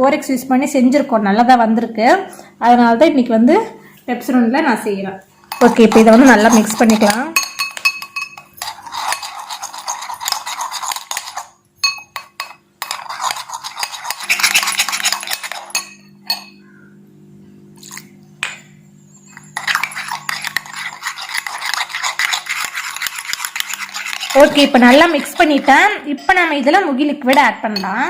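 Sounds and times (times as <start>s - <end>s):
spoon scraping and clinking bowl: 5.4s - 16.6s, 19.1s - 28.0s.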